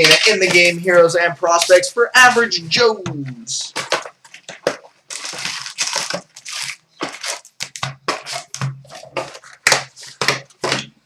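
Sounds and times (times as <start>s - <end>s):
wrapping rustling: 3.7s - 11.0s
packaging ripping: 3.8s - 10.8s.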